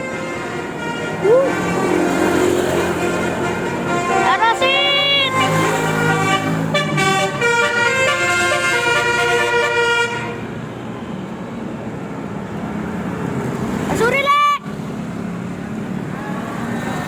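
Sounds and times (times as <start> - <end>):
musical vehicle horn: 0.0 - 10.5
vehicle engine and road noise: 0.0 - 17.0.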